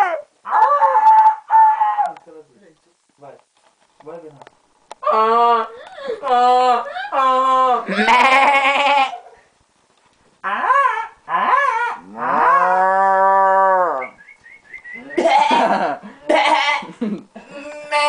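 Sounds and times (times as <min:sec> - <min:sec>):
person imitating animal calls: 0:05.0 - 0:09.4, 0:15.0 - 0:18.0.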